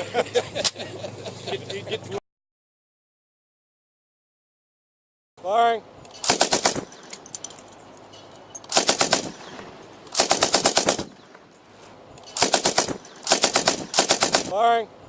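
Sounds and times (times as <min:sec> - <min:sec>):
machine gun bursts: 0:06.2 - 0:07.2, 0:08.7 - 0:09.5, 0:10.1 - 0:11.2, 0:12.3 - 0:14.5.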